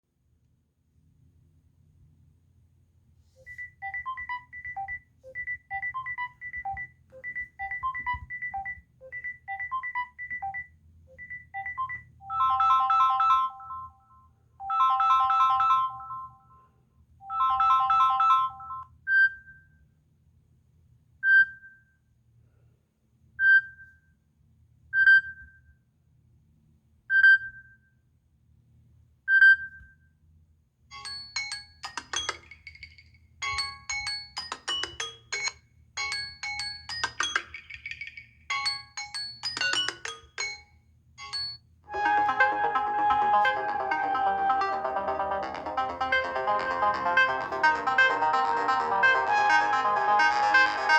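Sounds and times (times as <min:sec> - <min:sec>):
phone ringtone melody: 0:03.5 - 0:10.6, 0:11.2 - 0:14.0, 0:14.6 - 0:16.5, 0:17.2 - 0:18.8, 0:31.0 - 0:40.5, 0:41.3 - 0:50.9
chimed chords: 0:41.9 - 0:50.9.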